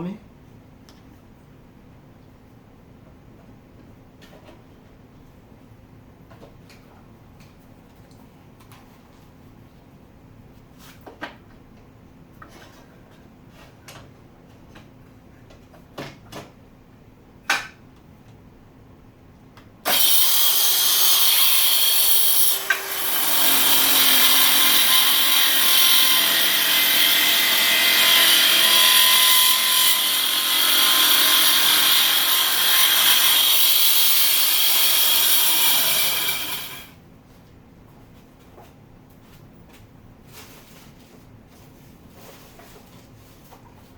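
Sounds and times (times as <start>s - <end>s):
circular saw cutting plywood: 19.9s - 36.9s.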